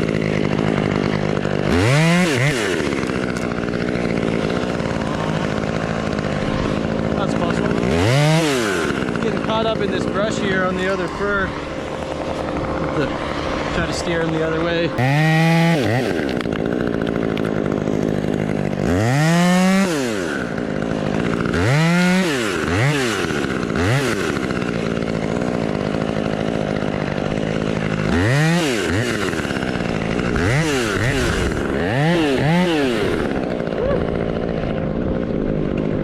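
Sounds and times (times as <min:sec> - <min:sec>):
chainsaw idling and revving: 0:00.0 - 0:36.0.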